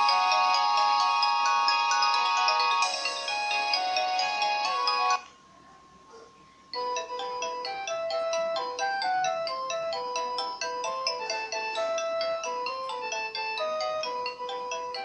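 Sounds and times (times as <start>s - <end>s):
mobile phone ringtones: 0.0s - 5.3s, 6.8s - 15.0s.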